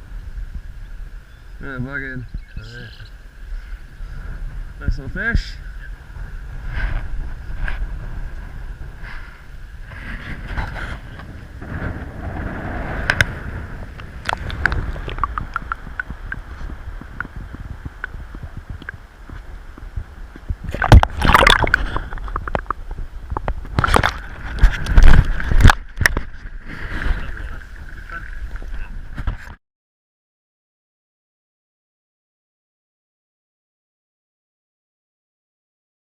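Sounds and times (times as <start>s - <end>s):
wind rumble on microphone: 0.0s - 29.6s
water sloshing and splashing: 14.0s - 29.6s.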